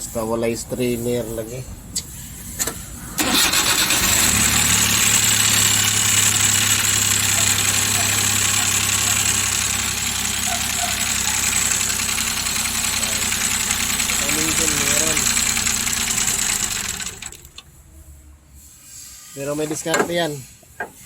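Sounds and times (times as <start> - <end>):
engine starting and idling: 2.5 - 17.7
fast tapping engine knock: 4.7 - 17.4.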